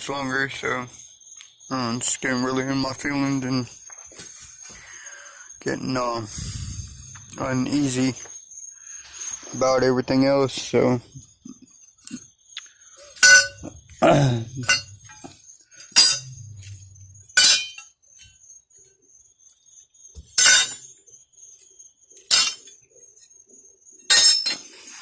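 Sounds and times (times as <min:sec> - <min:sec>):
short sharp clinks: 0:13.2 - 0:17.8.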